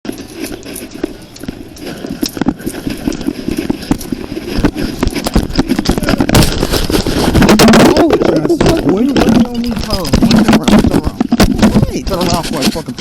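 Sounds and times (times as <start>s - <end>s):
footsteps: 0.0s - 13.0s
body camera knocks and rubbing: 3.6s - 13.0s.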